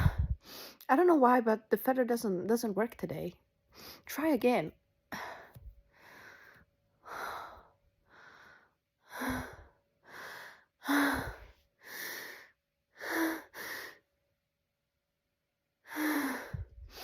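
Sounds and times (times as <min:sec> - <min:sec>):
woman gasping breaths: 0:00.0 - 0:00.8, 0:05.1 - 0:14.0, 0:15.8 - 0:17.0.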